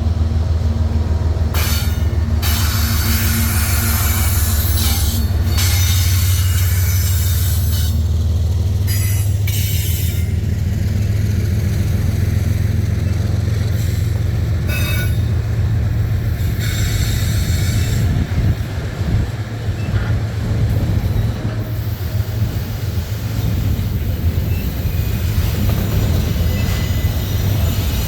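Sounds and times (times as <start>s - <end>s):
freight train rumbling past: 0.0s - 28.0s
high-pitched wheel squeal: 14.7s - 15.4s, 21.1s - 28.0s.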